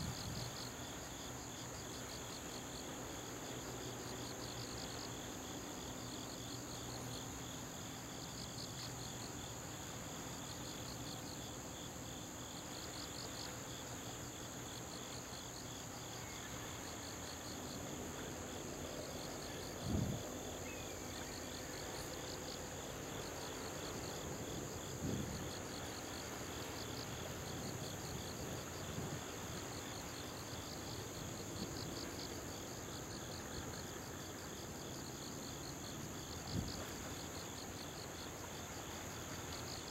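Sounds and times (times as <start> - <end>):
insects chirping: 0.0 - 39.9.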